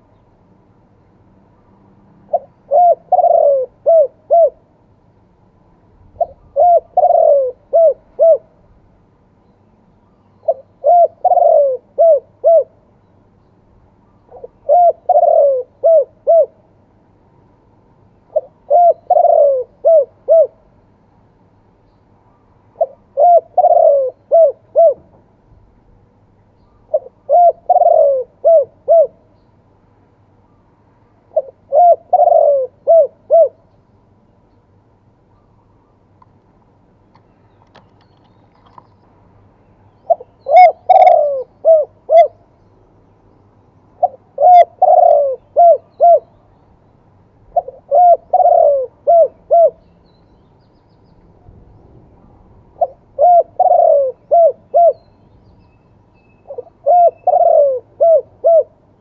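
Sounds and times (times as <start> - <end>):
dove cooing: 2.3 - 4.7, 6.2 - 8.6, 10.4 - 12.8, 14.3 - 16.7, 18.3 - 20.7, 22.8 - 25.1, 26.9 - 29.3, 31.3 - 33.6, 40.0 - 42.4, 44.0 - 46.4, 47.5 - 49.8, 52.7 - 55.1, 56.4 - 58.9.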